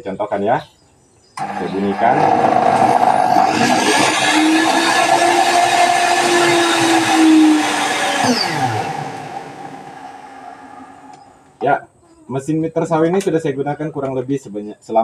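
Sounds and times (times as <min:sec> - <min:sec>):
miter saw running and winding down: 0:01.4 - 0:11.5.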